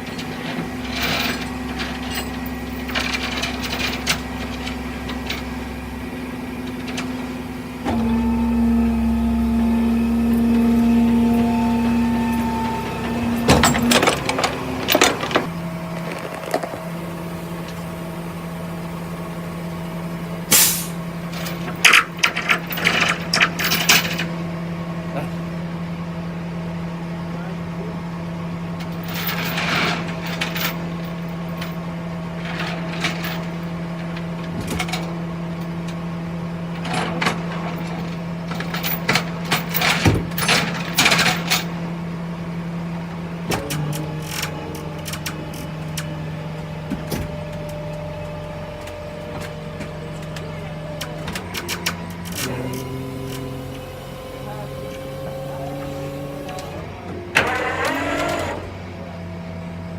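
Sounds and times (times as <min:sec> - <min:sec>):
clanking and rattling: 0:00.0 - 0:16.8, 0:21.3 - 0:24.4, 0:28.9 - 0:35.8, 0:36.7 - 0:42.0
vehicle mechanical hum: 0:00.0 - 0:59.9.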